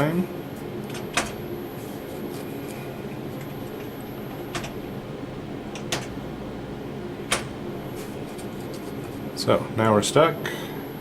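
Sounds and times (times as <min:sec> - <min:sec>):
steady hum: 0:00.0 - 0:11.0.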